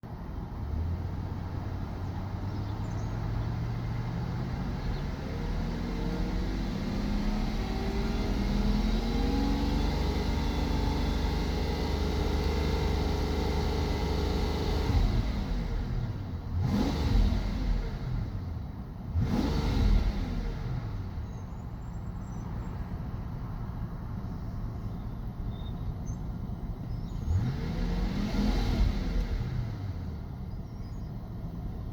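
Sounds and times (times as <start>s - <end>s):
misfiring car engine revving: 5.7s - 21.2s, 27.2s - 30.4s.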